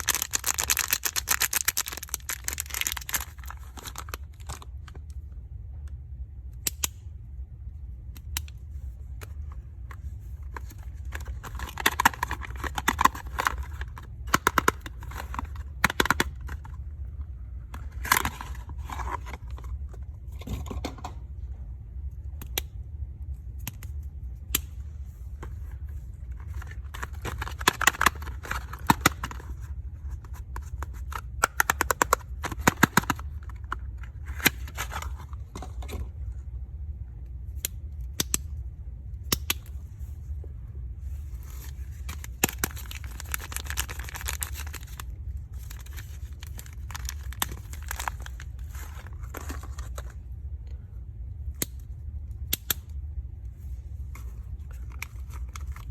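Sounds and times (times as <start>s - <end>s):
plastic packaging crinkling: 0.0s - 4.8s, 10.5s - 16.8s, 26.3s - 35.4s, 41.4s - 50.2s
steady low hum: 0.0s - 55.9s.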